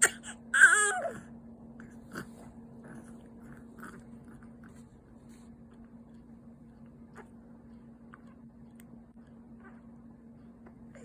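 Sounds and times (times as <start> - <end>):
baby wailing: 0.0 - 1.2.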